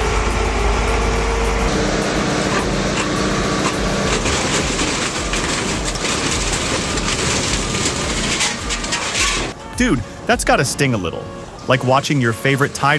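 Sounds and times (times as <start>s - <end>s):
heavy truck engine under load: 0.0s - 10.6s.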